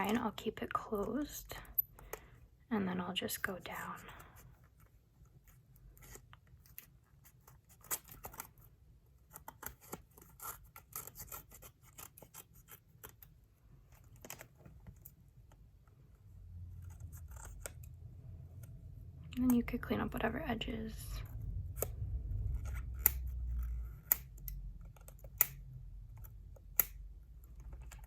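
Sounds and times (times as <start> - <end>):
scissors snipping paper: 5.9 - 13.3, 16.8 - 18.0, 22.5 - 28.0.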